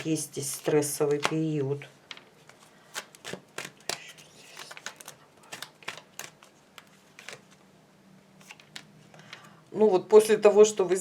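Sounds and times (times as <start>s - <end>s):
cards clicking and snapping: 2.9s - 7.6s.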